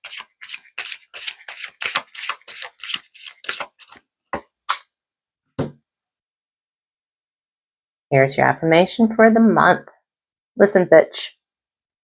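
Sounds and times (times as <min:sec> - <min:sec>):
cards shuffling: 0:00.0 - 0:04.0.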